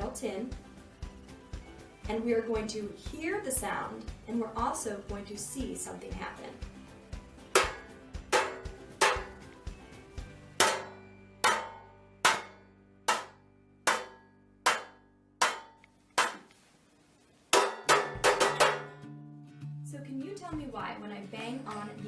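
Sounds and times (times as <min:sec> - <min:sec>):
spoon clanging on metal pan: 0:07.5 - 0:09.4, 0:10.5 - 0:16.5, 0:17.5 - 0:19.0.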